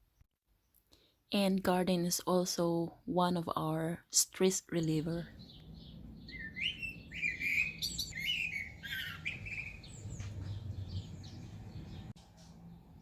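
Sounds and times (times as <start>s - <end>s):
songbird chirping and warbling: 4.7s - 12.9s.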